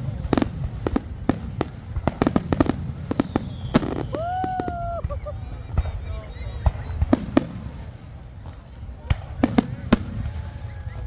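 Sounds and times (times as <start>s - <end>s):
fireworks bangs and pops: 0.0s - 11.0s.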